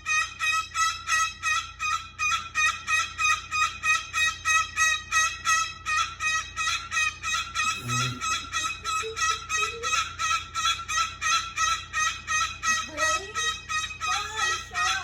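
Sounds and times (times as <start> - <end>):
cockatoo squawking: 7.3 - 11.4, 12.6 - 15.0.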